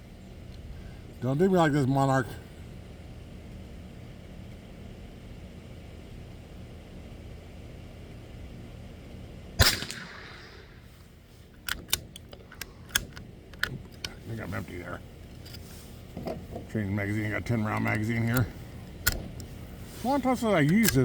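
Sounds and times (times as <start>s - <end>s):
rifle action clicks: 9.6s - 10.7s, 11.6s - 14.2s, 17.6s - 21.0s
rifle shot: 9.6s - 10.9s.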